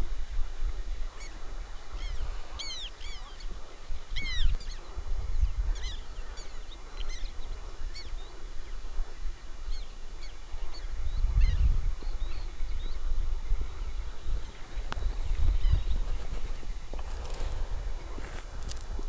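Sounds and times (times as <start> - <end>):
birds chirping and whistling: 2.0 - 3.5, 4.1 - 4.8, 5.7 - 7.4, 14.4 - 17.7.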